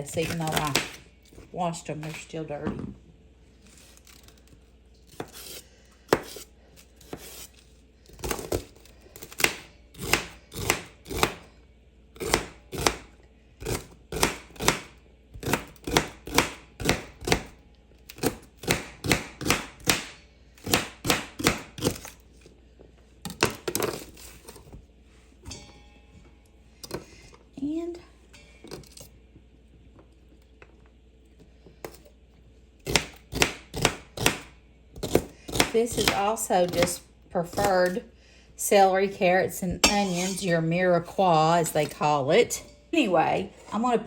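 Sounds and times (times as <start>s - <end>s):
knife chopping celery on board: 0.2s - 1.0s, 5.1s - 7.5s, 13.6s - 17.5s, 32.9s - 38.0s.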